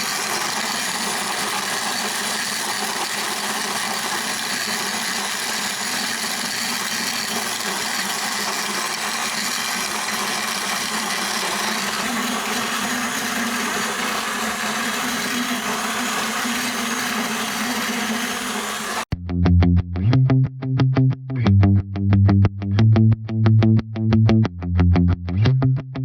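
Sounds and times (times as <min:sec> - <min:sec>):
stand mixer grinding grain: 0:00.0 - 0:19.1.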